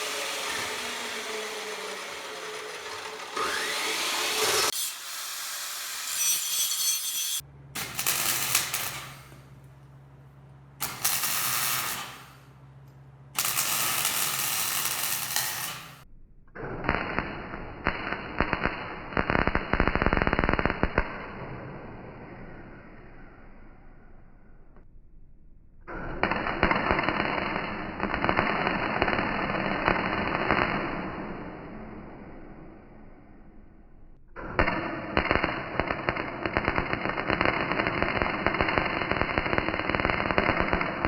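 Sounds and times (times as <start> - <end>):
low motor hum: 0.0 - 4.7
harsh power tool machining: 0.0 - 7.3.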